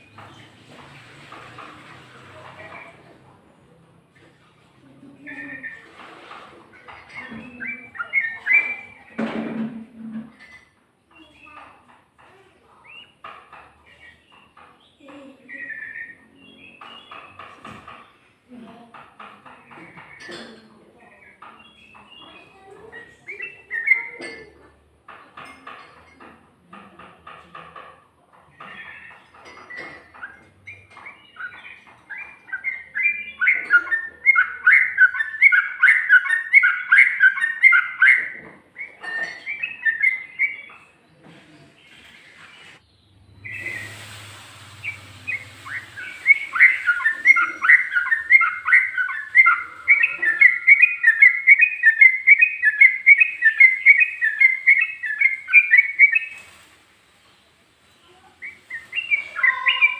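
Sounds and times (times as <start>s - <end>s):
bird chattering song: 1.4s - 9.2s, 10.4s - 27.8s, 28.5s - 41.2s, 41.8s - 44.0s, 44.6s - 56.6s, 57.2s - 59.9s
brief hiss: 43.4s - 46.7s.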